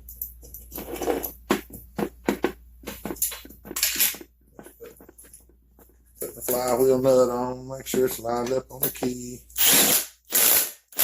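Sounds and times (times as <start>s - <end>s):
metal parts clicking and knocking: 2.3s - 4.3s.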